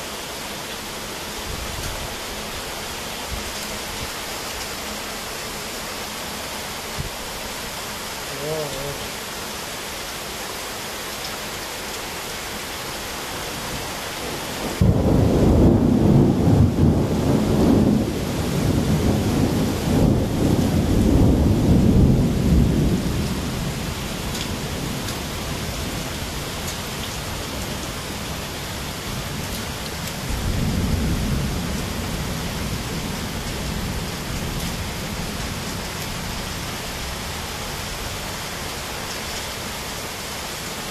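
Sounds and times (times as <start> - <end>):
steady rain falling: 0.0 - 40.9
thunder rumbling: 14.6 - 25.0, 30.2 - 36.6.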